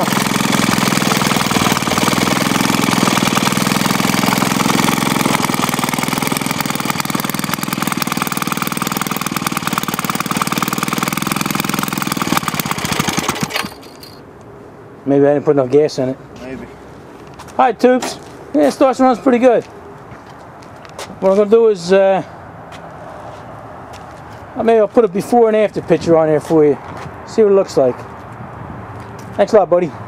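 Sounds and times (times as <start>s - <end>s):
two-stroke engine running: 0.0s - 14.2s.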